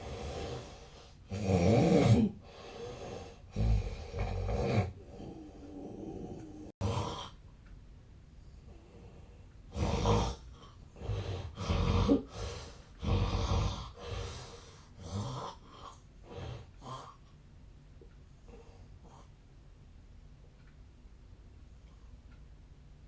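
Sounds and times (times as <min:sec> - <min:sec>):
man snoring heavily: 0:00.0 - 0:07.4, 0:09.7 - 0:10.4, 0:11.0 - 0:17.2.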